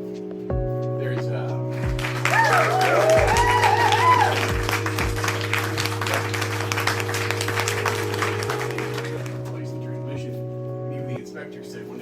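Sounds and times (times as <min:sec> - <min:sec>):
music with held low tones: 0:00.0 - 0:12.0
dense crackling: 0:04.3 - 0:09.6
voice: 0:09.4 - 0:12.0.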